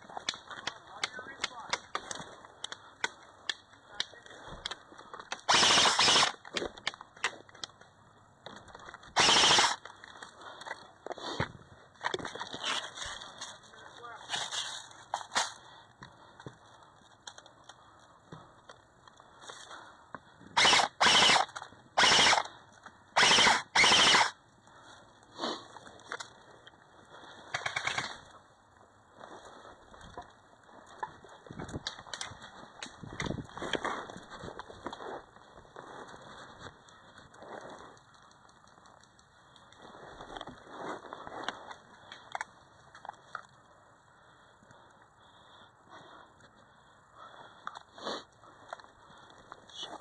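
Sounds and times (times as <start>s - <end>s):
full-auto airsoft gunfire: 5.4s - 6.4s, 9.2s - 9.8s, 20.6s - 22.5s, 23.2s - 24.4s.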